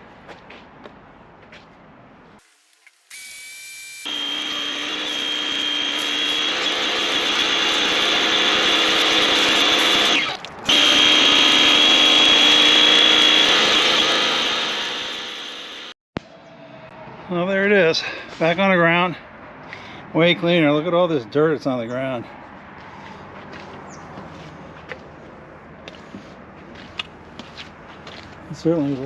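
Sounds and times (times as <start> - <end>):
vehicle lift whirring: 3.1 - 15.9.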